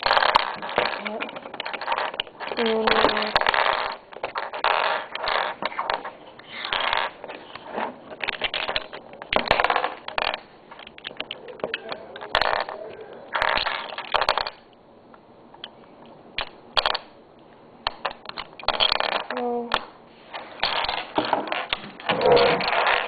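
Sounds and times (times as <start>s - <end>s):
plastic cube pieces clicking: 0.0s - 14.7s, 16.4s - 17.2s, 17.8s - 19.9s.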